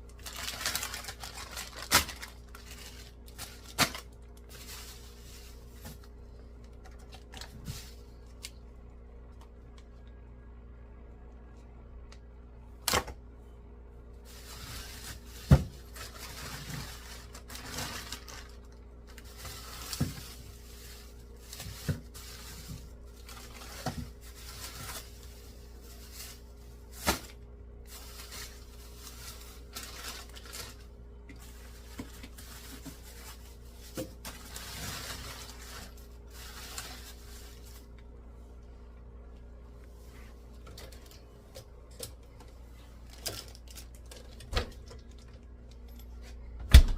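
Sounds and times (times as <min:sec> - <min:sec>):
steady low hum: 0:00.0 - 0:46.9
packaging rustling: 0:00.1 - 0:08.6, 0:14.3 - 0:37.9, 0:43.0 - 0:45.3.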